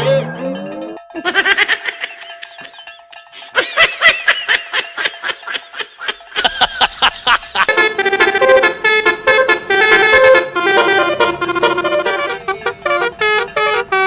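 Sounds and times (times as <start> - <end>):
high-pitched laughter: 1.1 - 7.7.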